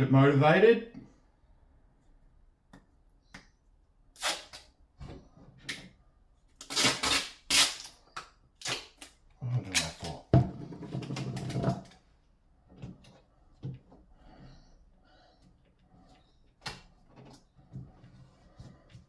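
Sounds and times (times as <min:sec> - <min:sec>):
duct tape ripping off roll: 0:04.2 - 0:04.7, 0:06.6 - 0:10.2.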